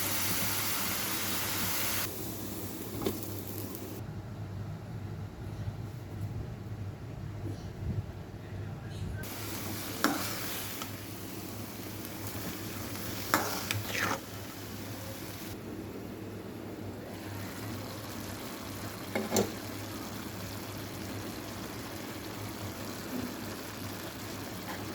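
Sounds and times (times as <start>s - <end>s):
food sizzling in a pan: 0.0s - 4.0s, 9.2s - 15.6s, 17.1s - 24.9s.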